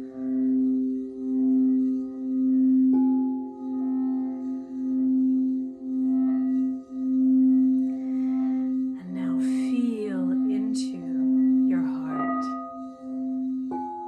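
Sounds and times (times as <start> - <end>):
singing bowl ringing: 0.0 - 14.0
wordless voice gliding in pitch: 9.0 - 12.6.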